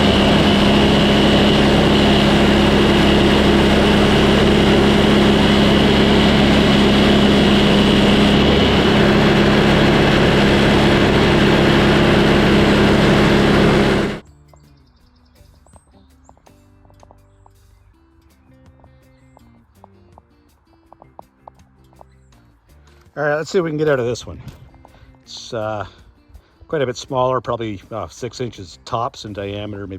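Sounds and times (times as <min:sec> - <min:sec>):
portable sawmill running: 0:00.0 - 0:14.2.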